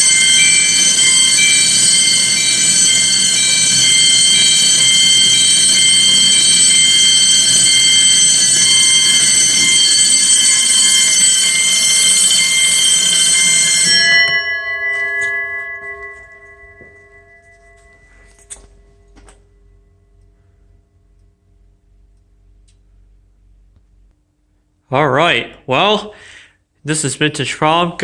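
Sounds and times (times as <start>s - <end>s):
fire alarm bells and chimes: 0.0s - 22.2s.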